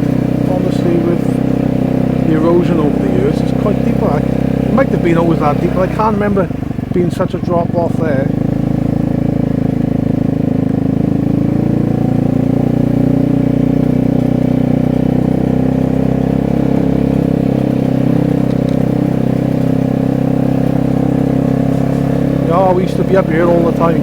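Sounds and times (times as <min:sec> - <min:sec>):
scooter engine and loud exhaust: 0:00.0 - 0:24.0.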